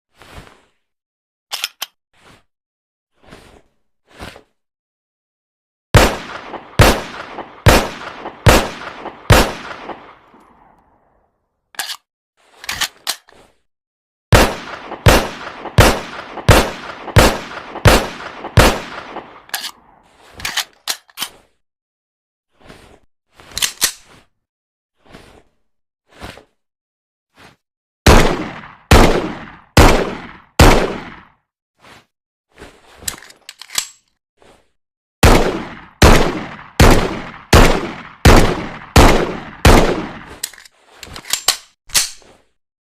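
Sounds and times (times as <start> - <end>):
metallic clicks: 1.5 - 2.0, 11.8 - 12.0, 19.5 - 19.8, 33.1 - 34.1, 40.4 - 42.2
pistol shots: 6.0 - 10.2, 14.3 - 19.5, 28.1 - 31.3, 35.2 - 40.4.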